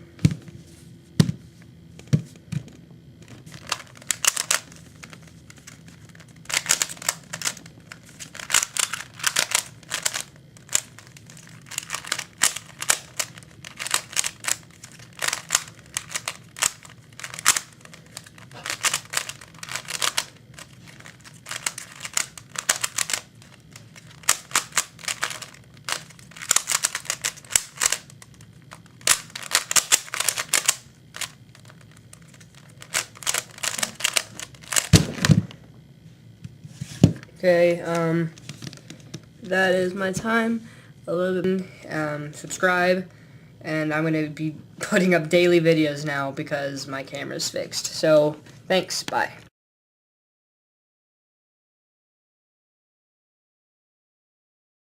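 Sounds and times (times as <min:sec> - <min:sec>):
puzzle cube layers clicking: 0:24.0 - 0:28.1, 0:29.0 - 0:31.3.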